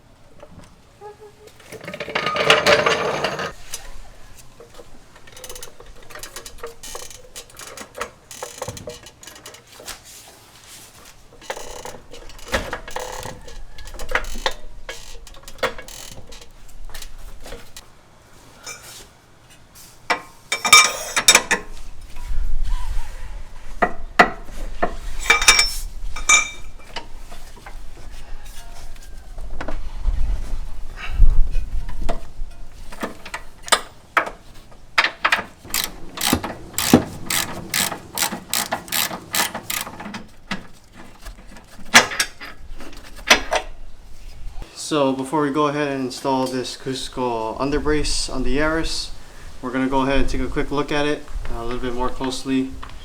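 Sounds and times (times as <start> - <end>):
metal clinks and knocks: 1.8 - 3.6, 25.2 - 27.1, 35.0 - 41.2
metal rattling bursts: 35.6 - 40.8
ratchet wrench clicking: 35.7 - 40.0.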